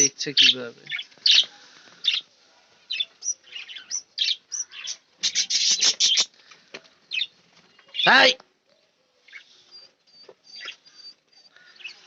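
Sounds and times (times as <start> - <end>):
budgerigars chirping: 0.0 - 2.3, 2.9 - 6.3, 7.1 - 7.3.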